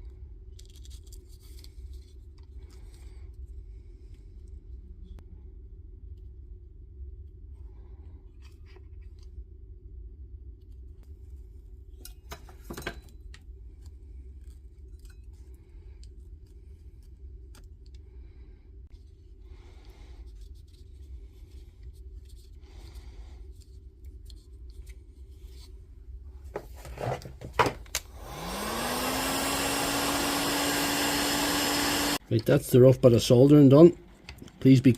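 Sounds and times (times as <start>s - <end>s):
small electric motor whining: 28.1s - 32.2s.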